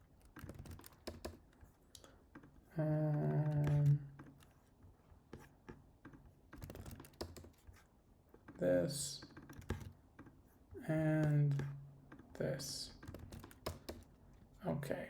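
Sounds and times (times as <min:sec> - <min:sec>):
computer keyboard typing: 0:00.2 - 0:02.1, 0:03.2 - 0:04.5, 0:06.5 - 0:07.8, 0:09.2 - 0:10.0, 0:12.9 - 0:14.1
person humming: 0:02.7 - 0:04.0.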